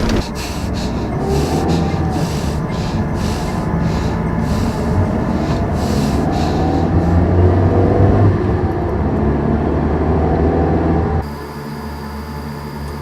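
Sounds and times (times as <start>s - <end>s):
pulsing rushing hiss: 0.0s - 7.2s
van engine and road drone: 0.0s - 13.0s.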